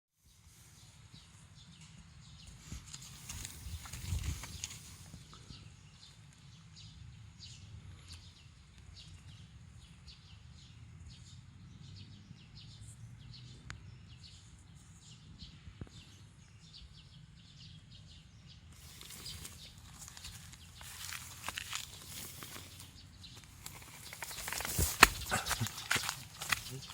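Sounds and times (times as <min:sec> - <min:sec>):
crunching footsteps: 0:18.8 - 0:26.9.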